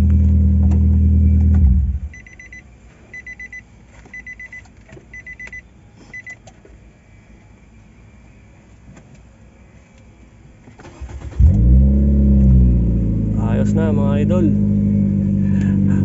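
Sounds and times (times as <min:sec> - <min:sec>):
car engine idling: 0:00.0 - 0:02.2, 0:10.8 - 0:16.0
high electronic beeps: 0:02.1 - 0:06.4.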